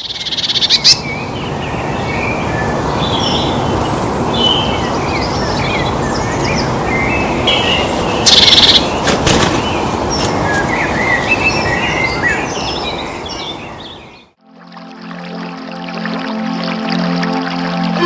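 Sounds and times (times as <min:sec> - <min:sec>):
birds chirping and calling: 0:00.0 - 0:14.3.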